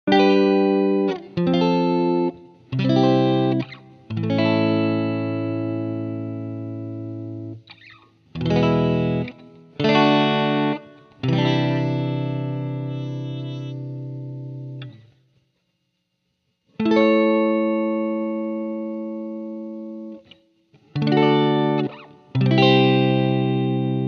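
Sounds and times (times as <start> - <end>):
distorted electric guitar chords: 0.1 - 15.1, 20.9 - 24.0.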